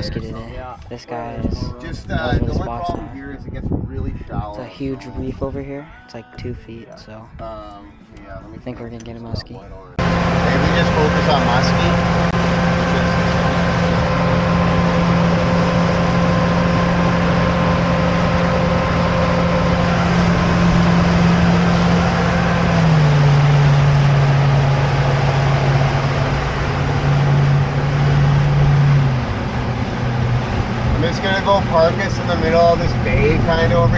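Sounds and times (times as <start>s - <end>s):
motorboat engine droning: 10.0s - 33.9s.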